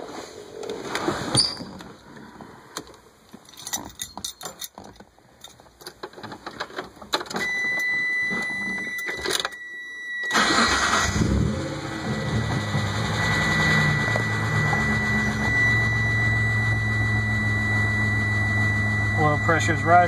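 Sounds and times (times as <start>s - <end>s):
keys jingling and clicks: 3.4s - 6.0s
steady high tone: 9.6s - 20.0s
car engine cranking and starting: 10.2s - 19.9s.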